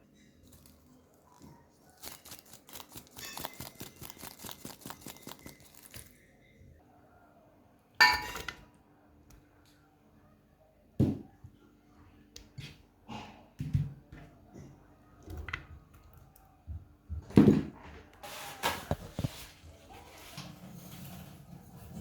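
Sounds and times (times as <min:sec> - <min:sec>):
dishes ringing clink: 0:08.0 - 0:08.6.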